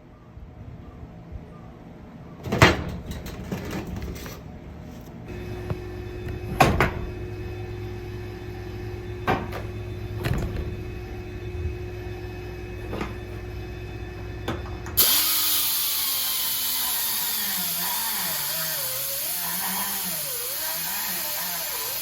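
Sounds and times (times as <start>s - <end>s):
motor humming: 5.3s - 22.0s.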